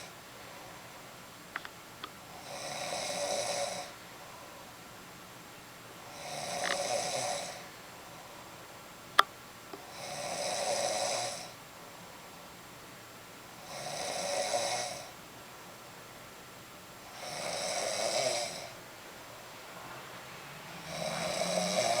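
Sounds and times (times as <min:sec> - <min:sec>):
woman snoring: 0:02.3 - 0:04.0, 0:06.1 - 0:07.6, 0:09.9 - 0:11.6, 0:13.6 - 0:15.1, 0:17.1 - 0:18.8, 0:20.7 - 0:22.0.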